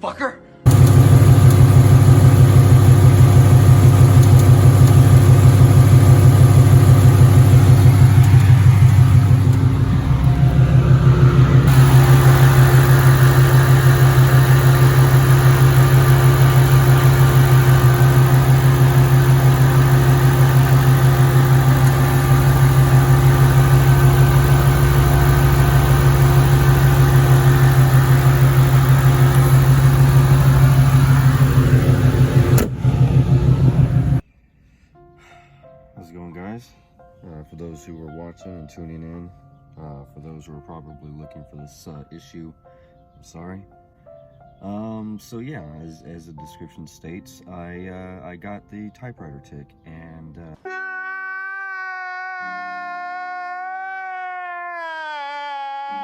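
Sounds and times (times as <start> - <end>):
car engine idling with ticking: 0.7 - 34.2.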